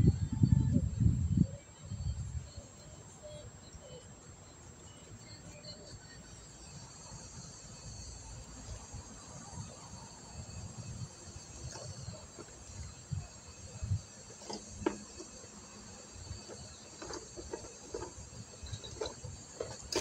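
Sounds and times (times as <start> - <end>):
low rumbling on microphone: 0.0 - 2.5
crickets chirring: 0.0 - 20.0.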